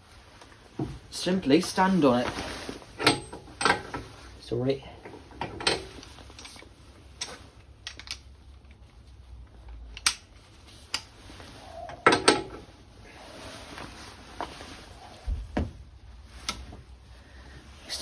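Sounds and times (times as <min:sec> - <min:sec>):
hand tools clicking and knocking: 0:03.0 - 0:04.1, 0:05.0 - 0:06.6, 0:07.8 - 0:08.2, 0:09.8 - 0:10.3, 0:11.8 - 0:12.6.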